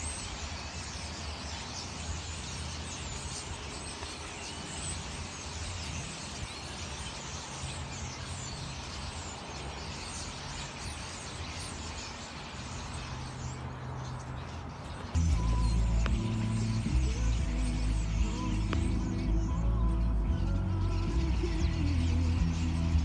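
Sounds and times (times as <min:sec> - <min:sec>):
small birds chirping and twittering: 0:00.0 - 0:23.0.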